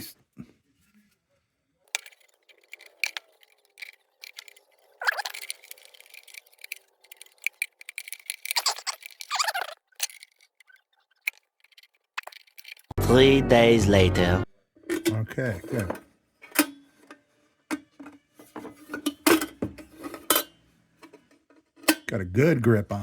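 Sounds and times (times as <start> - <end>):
pliers clicking and rattling: 1.9 - 13.0.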